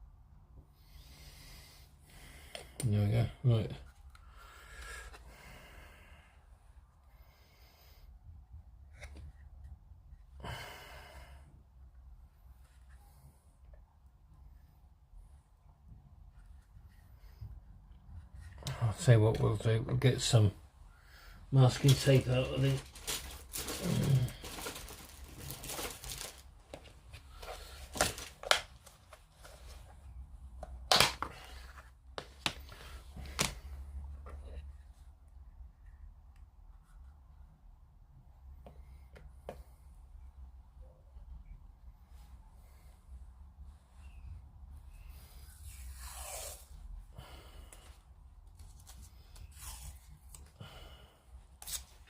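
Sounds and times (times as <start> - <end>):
rustling of masking tape and parts: 21.6 - 35.0, 47.7 - 50.6, 51.4 - 52.0
rustling: 21.7 - 30.0.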